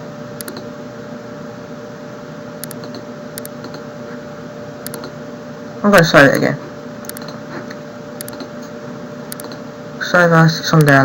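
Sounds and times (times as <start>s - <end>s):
constant hum tone: 0.0s - 11.0s
computer mouse double clicks: 2.6s - 3.8s, 4.8s - 5.2s, 7.1s - 7.4s, 8.2s - 8.5s, 9.3s - 9.6s.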